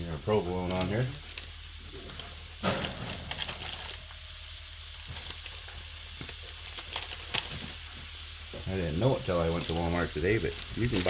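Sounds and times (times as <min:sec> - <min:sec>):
crackles: 0:00.0 - 0:11.0
meat and vegetables sizzling on griddle: 0:00.0 - 0:11.0.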